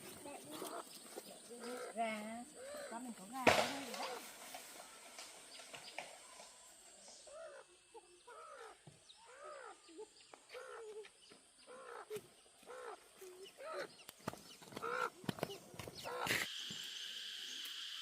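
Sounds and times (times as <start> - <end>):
chickens clucking: 0.0 - 6.5, 9.4 - 16.5.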